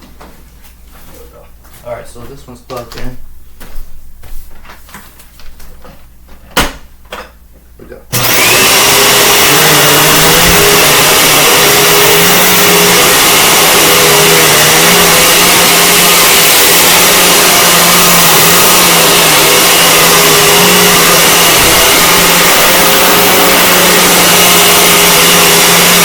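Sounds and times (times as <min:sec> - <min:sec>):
vacuum cleaner running: 0:08.1 - 0:26.0.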